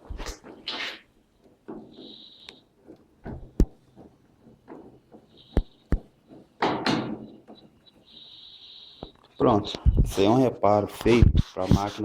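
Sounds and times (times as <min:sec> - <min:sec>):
metal panels knocking and clattering: 0:01.4 - 0:02.1, 0:02.8 - 0:08.0.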